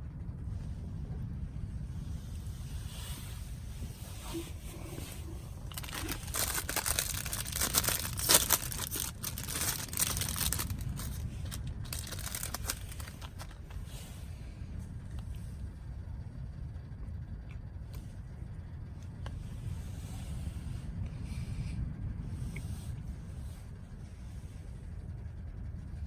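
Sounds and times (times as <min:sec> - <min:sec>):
steady low rumble: 0:00.0 - 0:26.0
crinkling and rustling: 0:03.0 - 0:14.2.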